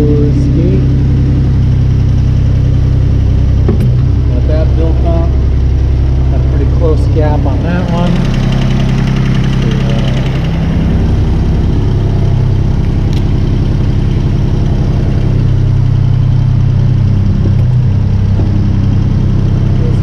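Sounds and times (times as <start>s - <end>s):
paver engine idling: 0.0s - 20.0s.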